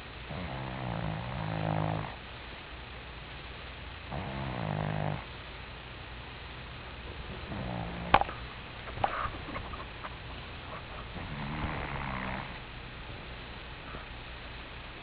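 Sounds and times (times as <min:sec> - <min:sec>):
cat snoring: 0:00.3 - 0:02.2, 0:04.1 - 0:05.3, 0:07.5 - 0:08.2, 0:10.8 - 0:12.6.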